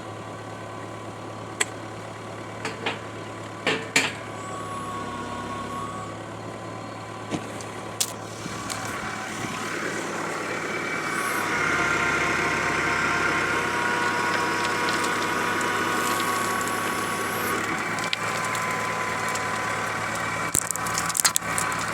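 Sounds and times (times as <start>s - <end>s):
earth auger grinding rocky ground: 6.8s - 21.9s
machine humming: 7.0s - 21.9s.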